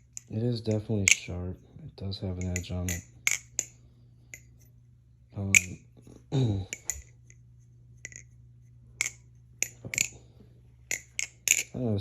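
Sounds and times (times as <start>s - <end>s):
butterfly knife clacking: 2.4s - 4.5s, 9.0s - 10.2s, 10.9s - 11.8s.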